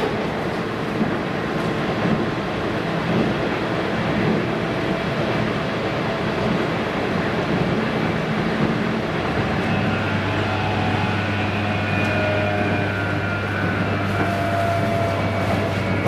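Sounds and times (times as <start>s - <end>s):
wheels rumbling on rail: 0.0s - 16.0s
electric train motor hum: 3.8s - 16.0s.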